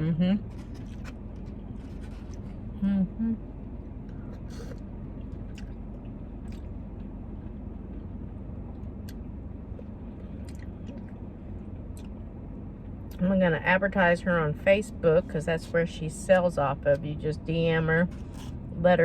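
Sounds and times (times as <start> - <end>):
steady low rumble: 0.0 - 19.0
person humming: 2.8 - 3.4
chewing clicks: 4.0 - 8.1.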